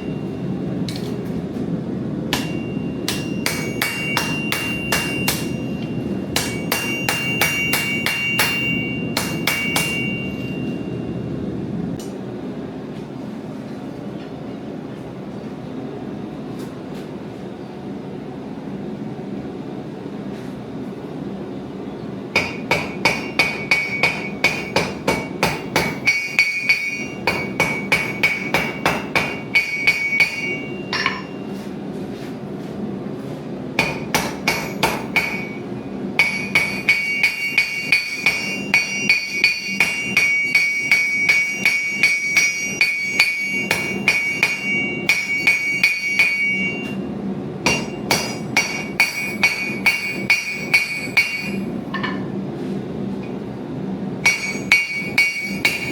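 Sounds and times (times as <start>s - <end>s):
hammer striking metal on anvil: 2.3s - 10.9s, 22.4s - 31.6s, 33.8s - 47.0s, 47.6s - 52.3s, 54.2s - 55.9s.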